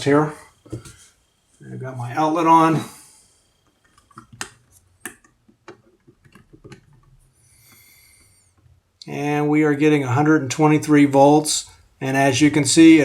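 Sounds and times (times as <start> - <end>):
soft hiss: 0.0 - 5.3.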